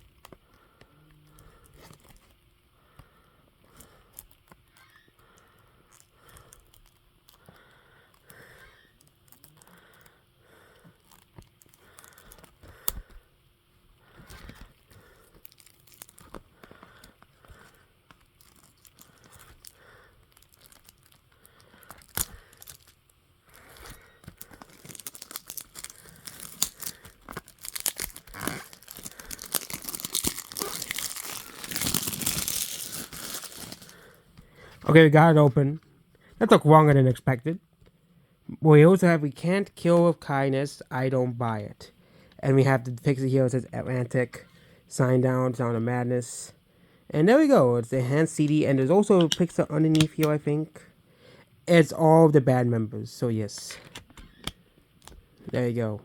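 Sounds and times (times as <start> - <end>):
plastic wrapping crinkling and tearing: 4.1 - 5.0, 5.9 - 8.3, 9.0 - 10.0, 11.0 - 13.1, 14.2 - 34.2.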